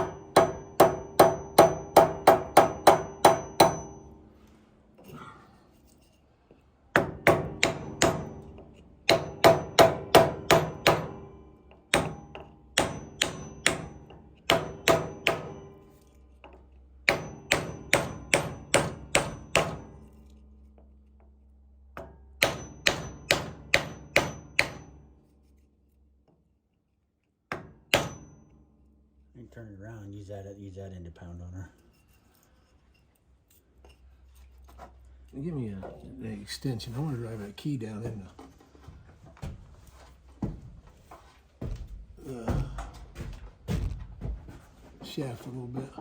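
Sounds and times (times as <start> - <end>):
hammer striking metal: 0.0 - 4.4, 6.9 - 20.4, 22.0 - 25.1, 27.5 - 28.7.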